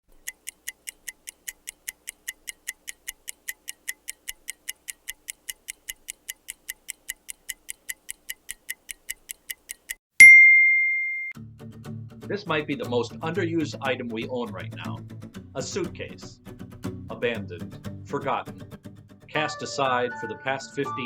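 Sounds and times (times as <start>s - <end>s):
microwave timer ticking: 0.1s - 10.4s.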